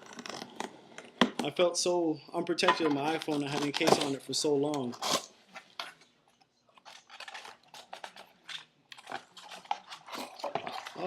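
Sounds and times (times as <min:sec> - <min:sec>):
packaging crinkling: 0:06.7 - 0:11.0.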